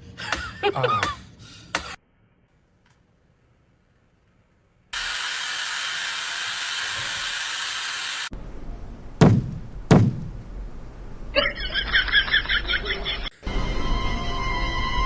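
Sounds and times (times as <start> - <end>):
steady hiss: 4.9 - 8.3
loud thuds: 9.2 - 10.4.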